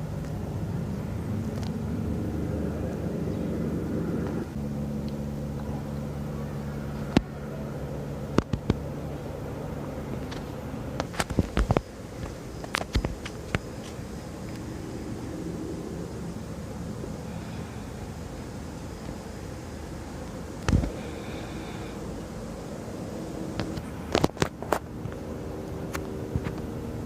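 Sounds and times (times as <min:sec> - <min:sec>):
helicopter droning: 0:00.0 - 0:27.0
sharp clicks and knocks: 0:10.2 - 0:14.0.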